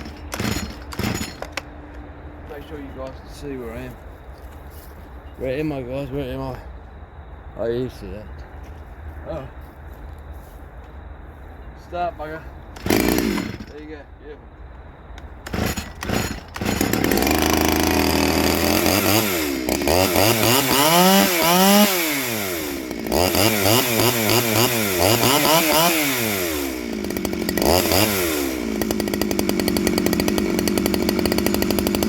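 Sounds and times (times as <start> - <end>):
chainsaw revving: 0.0 - 1.6, 12.8 - 13.8, 15.4 - 32.0.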